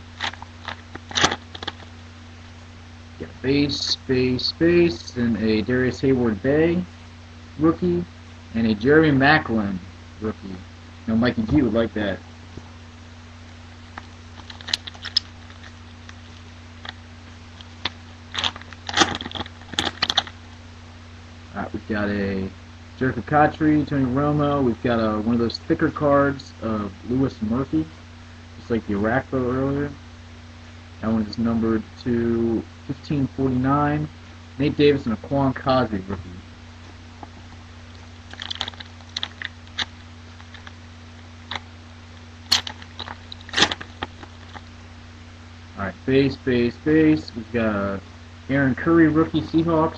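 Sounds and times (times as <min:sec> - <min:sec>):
card pack wrapper crinkling: 0:00.1 - 0:01.9, 0:13.9 - 0:17.0, 0:17.6 - 0:20.4, 0:37.9 - 0:40.8, 0:42.5 - 0:44.7.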